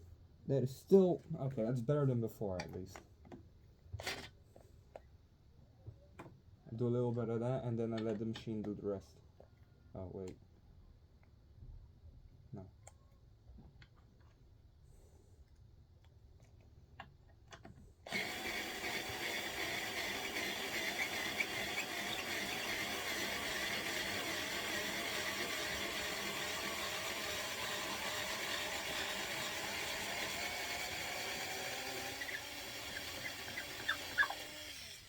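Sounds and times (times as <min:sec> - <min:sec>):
power drill whining: 0:18.1 - 0:35.0.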